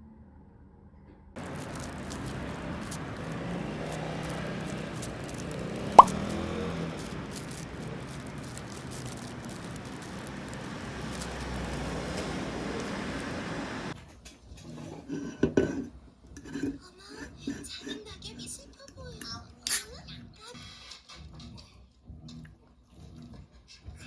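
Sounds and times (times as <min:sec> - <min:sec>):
cooking hiss with crackles: 0:01.4 - 0:14.0
sharp plop rising in pitch: 0:03.9 - 0:06.9.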